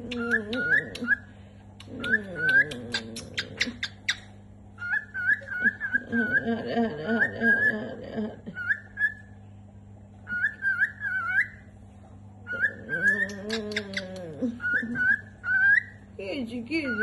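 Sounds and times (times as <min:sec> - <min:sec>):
cockatiel whistling calls: 0:03.8 - 0:06.2, 0:10.3 - 0:11.6, 0:14.6 - 0:16.0.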